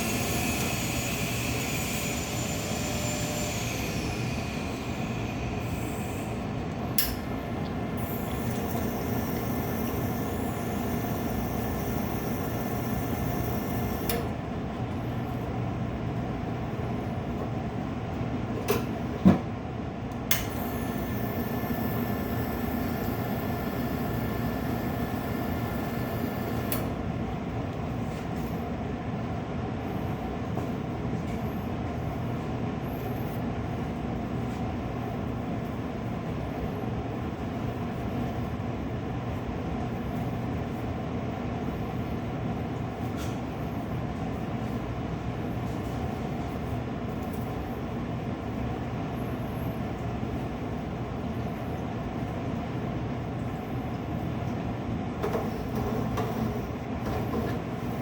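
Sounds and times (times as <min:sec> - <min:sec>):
steady mechanical hum and rumble: 0:00.0 - 0:58.0.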